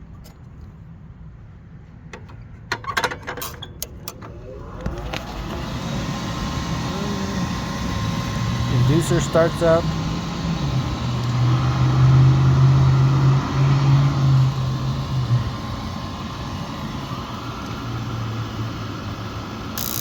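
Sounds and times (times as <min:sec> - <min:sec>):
motor humming: 0:04.0 - 0:20.0.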